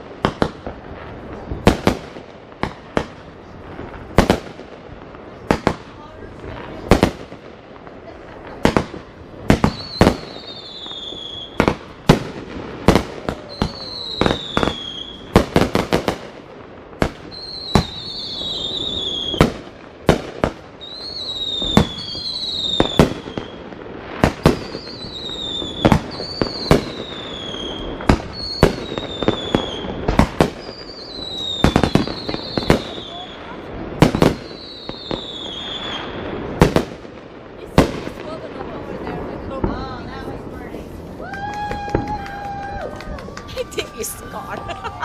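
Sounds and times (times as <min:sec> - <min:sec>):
fireworks bangs and cracks: 0:00.0 - 0:45.0
falling firework whistle: 0:09.6 - 0:11.8, 0:12.9 - 0:15.3, 0:17.3 - 0:19.6, 0:20.8 - 0:36.3, 0:41.1 - 0:45.0.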